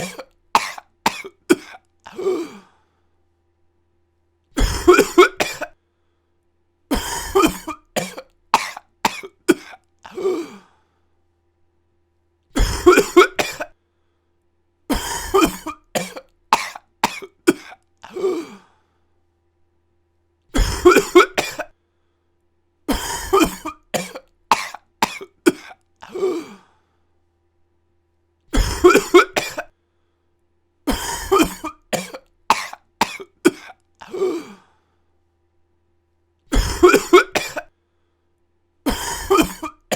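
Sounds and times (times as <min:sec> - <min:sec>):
person coughing: 0:00.0 - 0:02.8, 0:04.6 - 0:05.8, 0:06.9 - 0:10.7, 0:12.6 - 0:13.8, 0:14.9 - 0:18.7, 0:20.5 - 0:21.8, 0:22.9 - 0:26.7, 0:28.5 - 0:29.7, 0:30.9 - 0:34.7, 0:36.5 - 0:37.7, 0:38.9 - 0:39.9.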